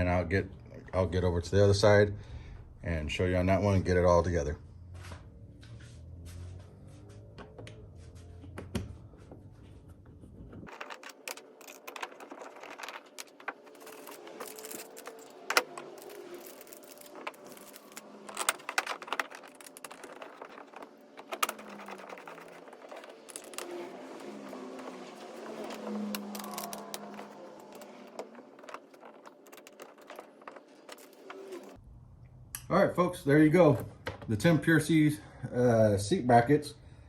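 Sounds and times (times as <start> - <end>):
low background hum: 0.0 - 37.0
bolts and hand tools rattling: 10.7 - 31.8.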